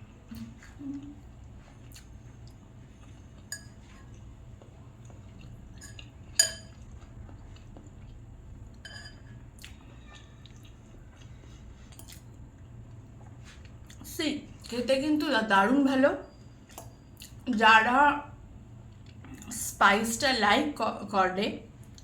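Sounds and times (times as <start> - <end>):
faint steady hum: 0.0 - 22.0
cutlery clinking against dish: 3.5 - 3.9, 5.8 - 6.8, 8.8 - 9.4.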